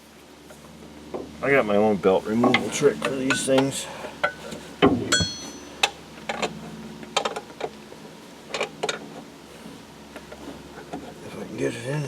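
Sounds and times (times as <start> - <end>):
hand tools clicking and knocking: 2.4 - 6.5
short metallic ring: 5.1 - 5.9.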